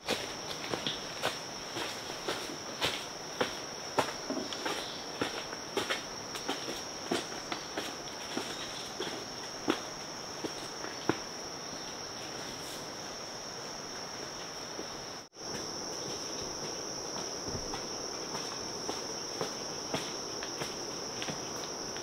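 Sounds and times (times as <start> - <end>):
insects chirring: 0.0 - 22.0.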